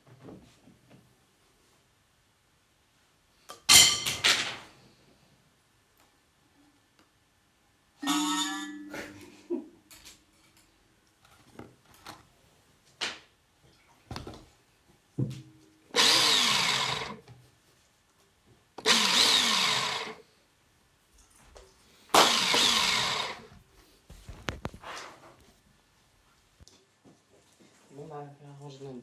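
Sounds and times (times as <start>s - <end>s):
harsh whirring bursts: 16.0s - 17.2s, 18.8s - 20.2s, 22.2s - 23.5s.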